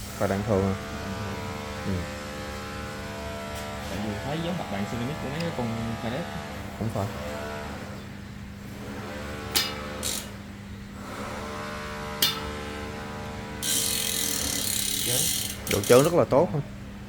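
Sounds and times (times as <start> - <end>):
steady low hum: 0.0 - 17.0
freehub ratchet buzz: 8.6 - 16.3
wheel hub clicks: 13.6 - 16.2.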